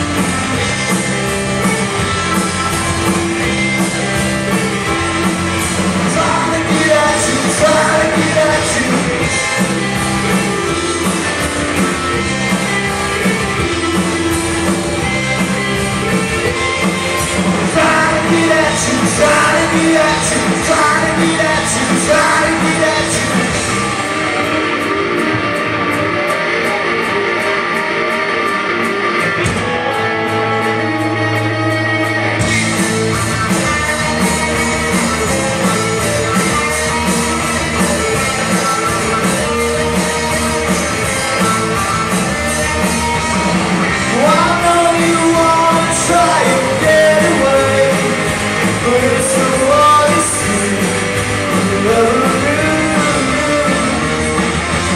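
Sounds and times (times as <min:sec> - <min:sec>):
rock band playing loudly: 0:00.0 - 0:54.9
person singing: 0:06.0 - 0:09.6, 0:17.6 - 0:24.8, 0:44.0 - 0:54.9.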